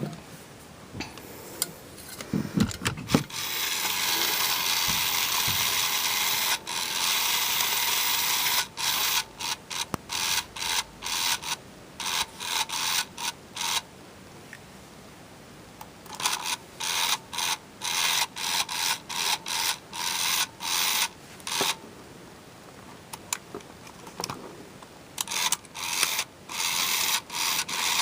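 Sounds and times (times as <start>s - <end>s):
toy gear motor whirring: 3.1s - 13.8s, 16.1s - 21.8s, 25.2s - 28.0s
toy clicks: 3.3s - 13.8s, 16.1s - 21.8s, 25.2s - 28.0s.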